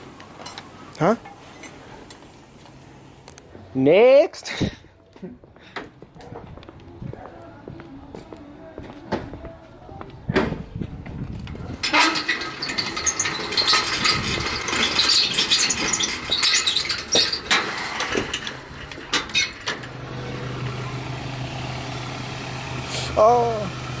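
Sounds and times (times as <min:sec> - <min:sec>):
car engine clattering: 0:11.5 - 0:24.0.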